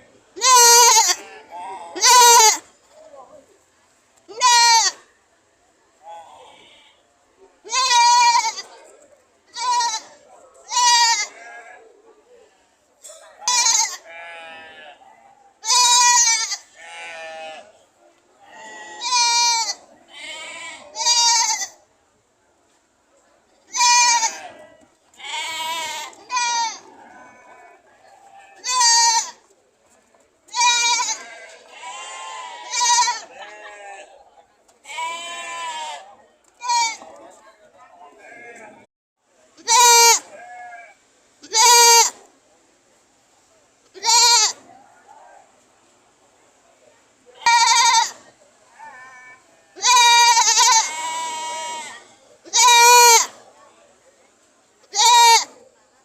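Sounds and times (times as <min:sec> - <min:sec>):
goats bleating: 0:00.4 - 0:02.6, 0:04.3 - 0:05.0, 0:07.7 - 0:08.7, 0:09.5 - 0:10.1, 0:10.7 - 0:11.8, 0:13.4 - 0:15.0, 0:15.6 - 0:17.7, 0:18.5 - 0:21.8, 0:23.7 - 0:29.4, 0:30.5 - 0:34.1, 0:34.9 - 0:37.1, 0:39.6 - 0:42.2, 0:44.0 - 0:44.6, 0:47.4 - 0:48.1, 0:48.8 - 0:53.3, 0:54.9 - 0:55.5.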